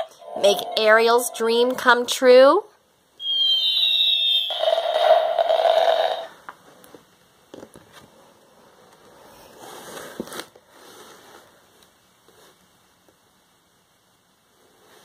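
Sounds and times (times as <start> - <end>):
book page turning: 9.6 - 11.2.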